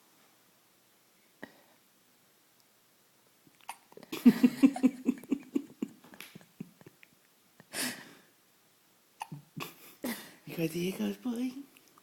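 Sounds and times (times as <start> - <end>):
baby hiccuping and grunting: 3.6 - 4.0, 9.2 - 9.6.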